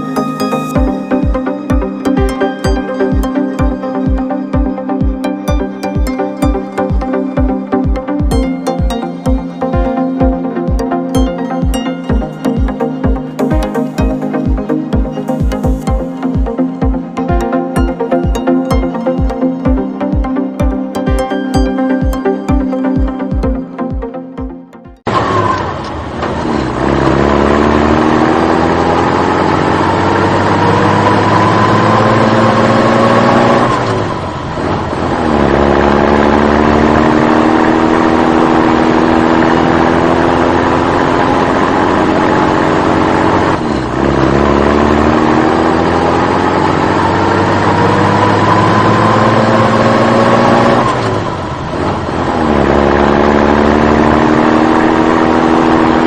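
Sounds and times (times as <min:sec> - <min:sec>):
engine revving: 0:25.0 - 0:56.0.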